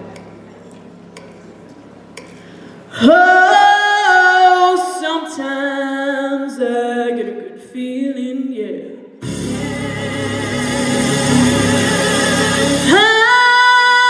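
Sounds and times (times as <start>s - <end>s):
women singing in harmony: 2.9s - 7.4s, 9.2s - 14.0s.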